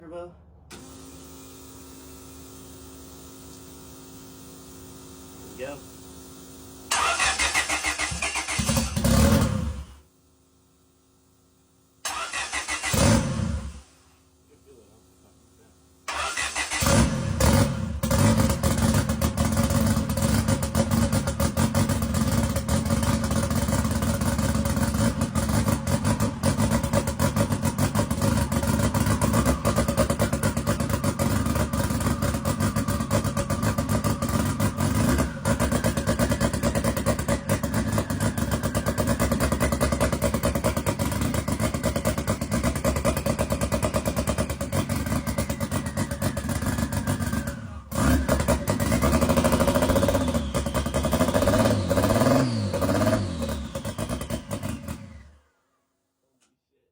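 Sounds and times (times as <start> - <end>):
engine starting: 0.7 - 1.4, 6.9 - 10.0, 12.0 - 13.9, 16.1 - 20.0, 44.4 - 55.5
engine idling with rapid pulsing: 0.8 - 10.8, 11.4 - 55.2.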